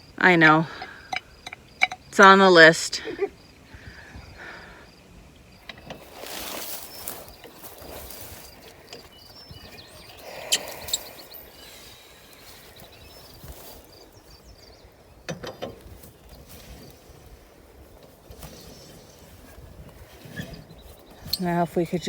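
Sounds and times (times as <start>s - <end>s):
quiet outdoor ambience: 0.0s - 22.0s
sharp metallic clicks: 0.8s - 2.4s.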